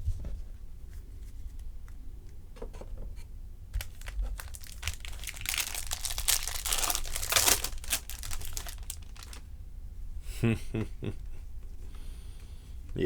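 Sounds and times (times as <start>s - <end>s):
foil wrapper crinkling: 3.8s - 9.5s.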